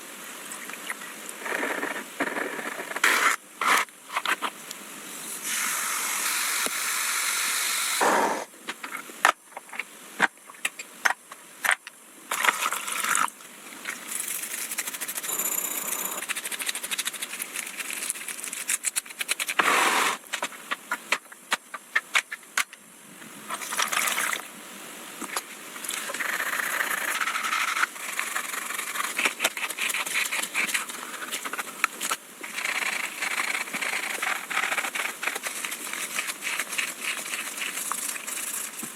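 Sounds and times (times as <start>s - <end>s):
scrubbing and scraping: 14.1s - 21.2s, 26.0s - 38.9s.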